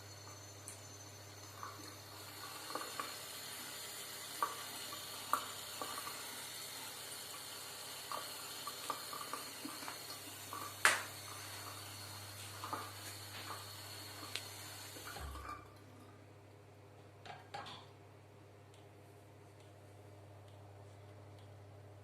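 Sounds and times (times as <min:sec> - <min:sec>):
small ticks and drips: 0:00.2 - 0:06.3, 0:07.3 - 0:15.2, 0:18.7 - 0:21.6
tap water running into sink: 0:00.3 - 0:15.6.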